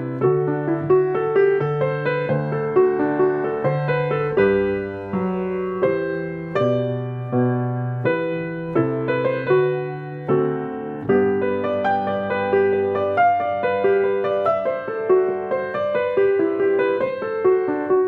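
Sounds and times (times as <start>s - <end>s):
slow solo piano: 0.0s - 18.0s.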